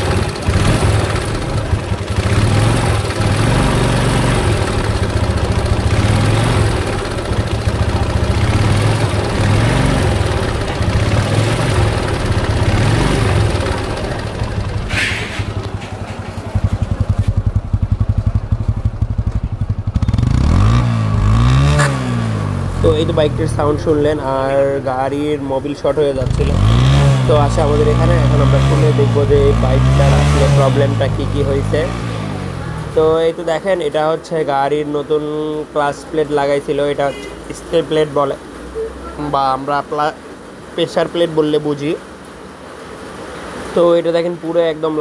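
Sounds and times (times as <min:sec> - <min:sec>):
motorcycle engine revving and idling: 0:00.0 - 0:33.8.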